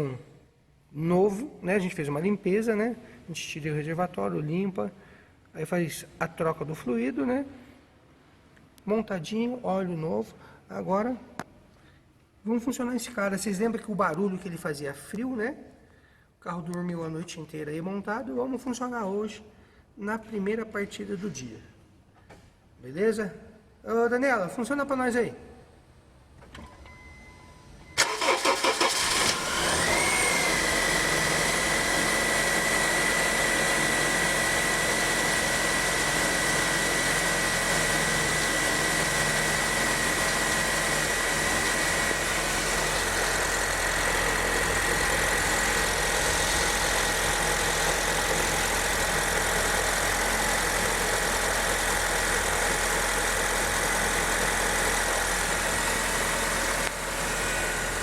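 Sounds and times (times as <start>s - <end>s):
car engine idling: 28.0s - 58.0s.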